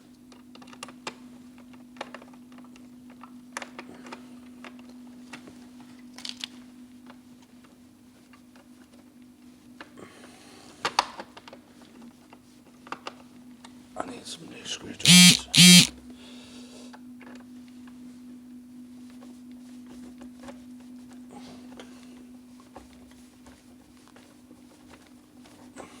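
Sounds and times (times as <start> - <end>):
screwdriver clicks and scrapes: 15.1 - 15.9.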